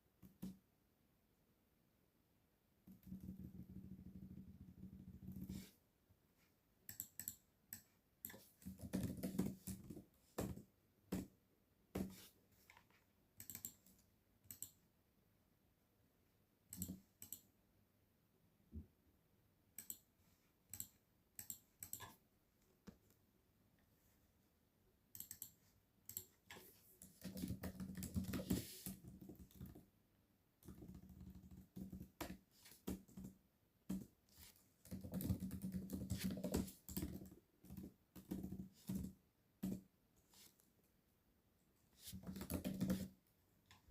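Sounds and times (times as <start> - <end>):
mouse clicking: 6.9 - 8.6, 13.4 - 14.8, 16.7 - 17.5, 19.8 - 20.1, 20.7 - 22.2, 25.1 - 29.7
keyboard typing: 6.9 - 11.2, 13.4 - 14.8, 16.7 - 17.5, 19.8 - 20.1, 20.7 - 22.2, 25.1 - 29.9, 30.6 - 34.1, 34.8 - 39.9, 42.1 - 43.2.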